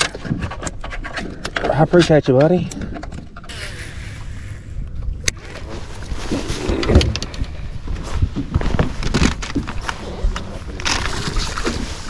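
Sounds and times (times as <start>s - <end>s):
steady low rumble: 2.6s - 11.0s.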